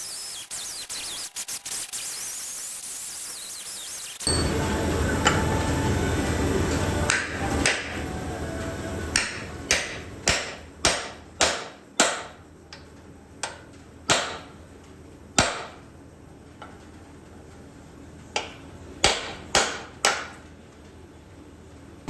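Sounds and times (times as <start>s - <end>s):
hammer on chisel ringing blows: 4.3s - 5.5s.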